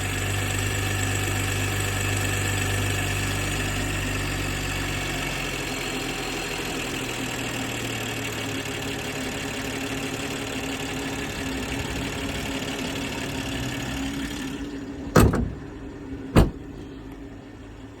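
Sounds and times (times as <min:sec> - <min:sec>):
engine ticking: 0:00.0 - 0:17.4
car engine idling: 0:00.0 - 0:18.0
loud thumps: 0:15.1 - 0:16.9.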